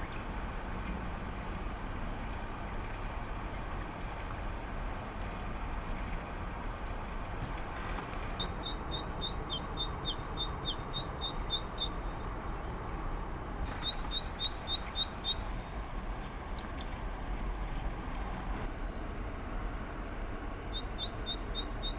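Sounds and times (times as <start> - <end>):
rain hiss: 0.0 - 9.7, 13.6 - 18.7
sharp clicking bird notes: 13.7 - 18.6.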